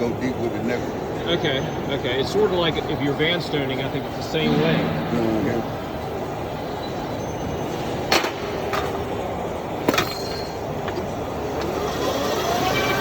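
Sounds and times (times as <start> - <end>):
rotary machine running: 11.4 - 13.0.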